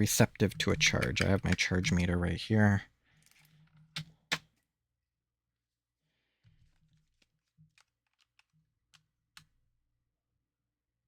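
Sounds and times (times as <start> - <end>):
faint clicks and taps: 0.4 - 2.0.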